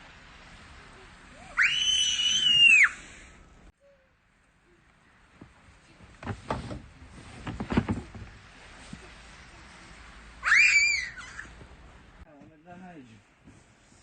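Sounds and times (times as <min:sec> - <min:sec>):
child squealing: 0:01.5 - 0:03.0, 0:10.4 - 0:11.6.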